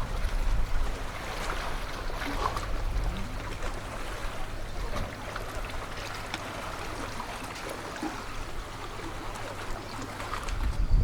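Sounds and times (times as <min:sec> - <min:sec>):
seawater sloshing: 0:00.0 - 0:11.0.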